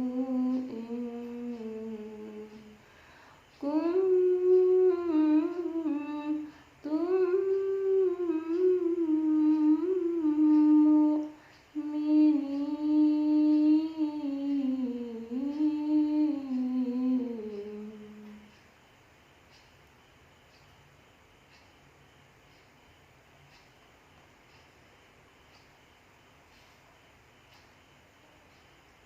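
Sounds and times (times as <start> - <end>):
person chanting recitation: 0.0 - 2.8, 3.5 - 18.6.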